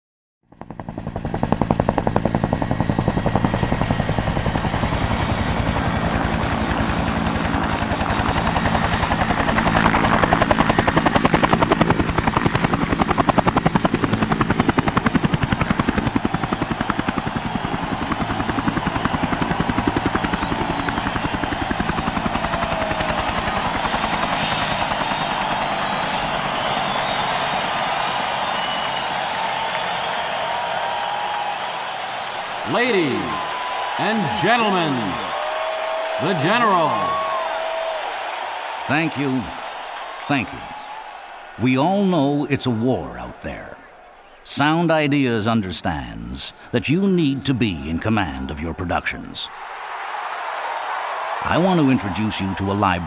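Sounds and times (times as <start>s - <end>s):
helicopter rotor beating: 0.5s - 44.8s, 51.4s - 53.0s
turbine whine: 0.9s - 35.3s.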